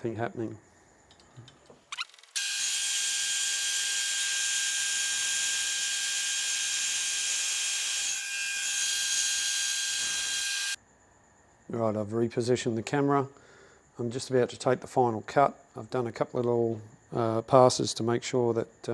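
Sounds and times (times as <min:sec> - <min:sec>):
hiss of cutting: 0:02.0 - 0:10.8.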